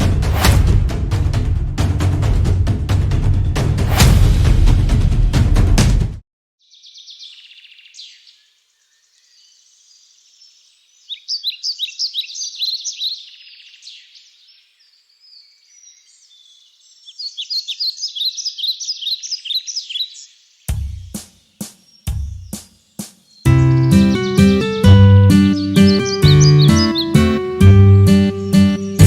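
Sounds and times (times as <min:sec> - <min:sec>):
birds chirping and twittering: 0:06.6 - 0:29.0.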